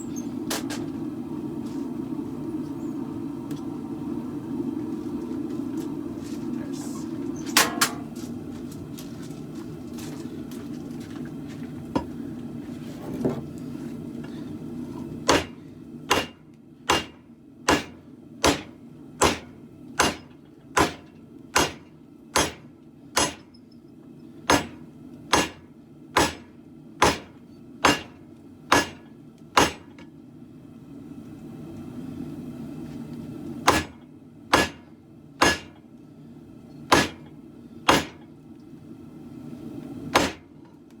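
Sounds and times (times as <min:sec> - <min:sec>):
low steady hum: 0:00.0 - 0:41.0
hammer striking metal on anvil: 0:07.6 - 0:08.2, 0:15.3 - 0:23.5, 0:24.5 - 0:25.6, 0:26.2 - 0:29.9, 0:33.7 - 0:34.8, 0:35.4 - 0:35.8, 0:36.9 - 0:37.3, 0:37.9 - 0:38.2, 0:40.2 - 0:40.4.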